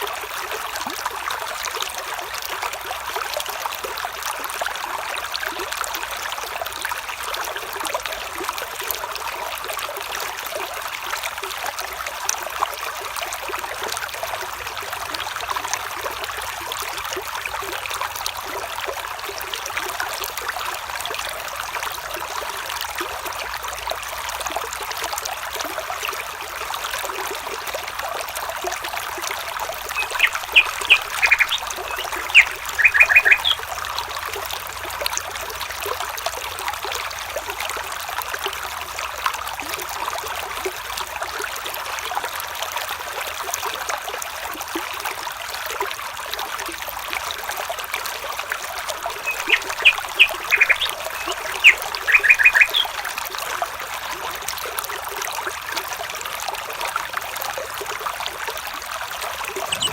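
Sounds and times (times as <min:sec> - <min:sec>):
stream flowing: 0:00.0 - 0:59.9
bird chirping: 0:29.8 - 0:33.7, 0:49.2 - 0:53.0, 0:59.6 - 0:59.9.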